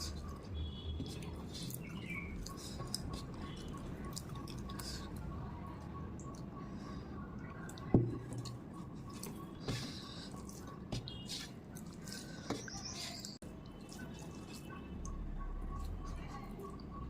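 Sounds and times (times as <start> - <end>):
wet chewing and mouth smacks: 1.0 - 5.3.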